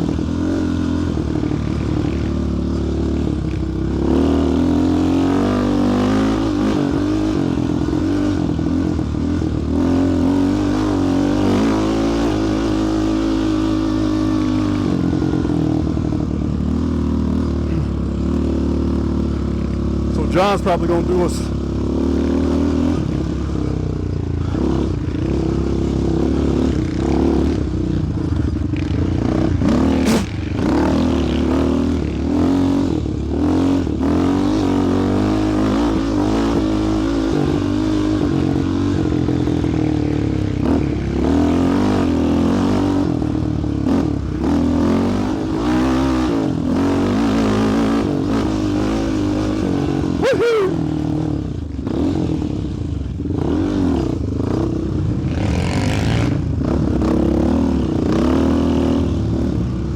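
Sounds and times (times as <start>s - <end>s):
quad engine running under load: 0.0s - 59.9s.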